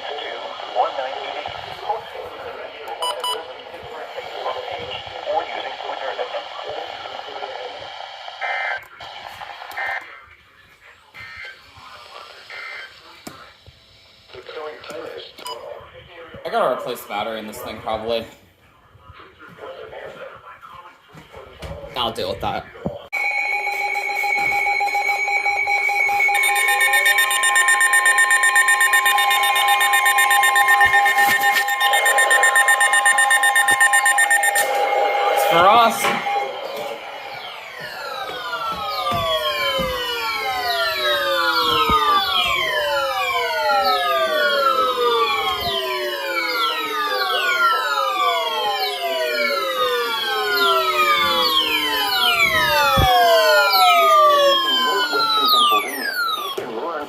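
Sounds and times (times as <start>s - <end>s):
radio hiss: 0.0s - 16.4s
electronic beeper beeps: 23.2s - 45.8s, 48.6s - 56.6s
weather radio alarm tones: 23.2s - 56.6s.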